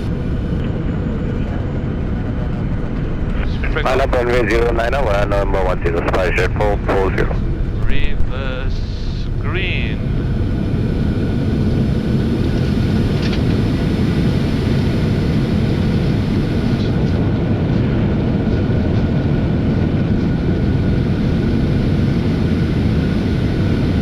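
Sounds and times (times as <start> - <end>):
thin steady whine: 0.0 - 18.3
aircraft rolling down runway: 0.0 - 24.0
jet engines in reverse thrust: 0.0 - 24.0.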